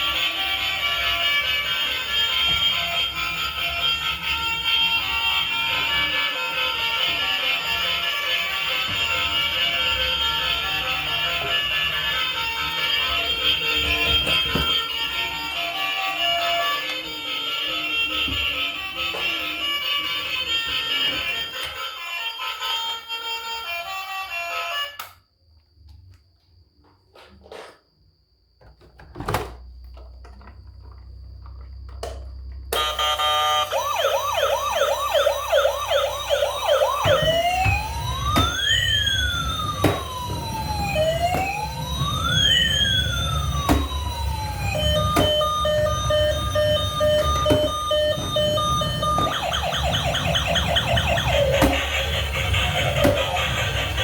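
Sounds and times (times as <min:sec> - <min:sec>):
toy electronic siren: 0:00.0 - 0:25.2, 0:32.7 - 0:54.0
tinny electronic melody: 0:32.8 - 0:54.0.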